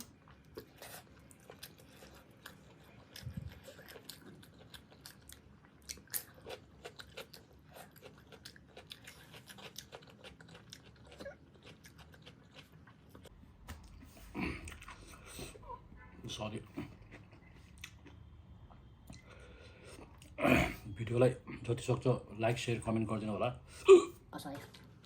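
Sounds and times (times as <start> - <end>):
person chewing food: 0.0 - 15.9, 16.7 - 20.8.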